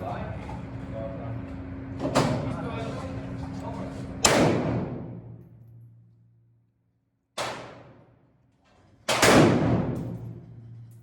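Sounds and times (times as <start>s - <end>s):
rifle shots echoing indoors: 4.2s - 5.4s, 7.2s - 8.4s, 9.0s - 11.0s.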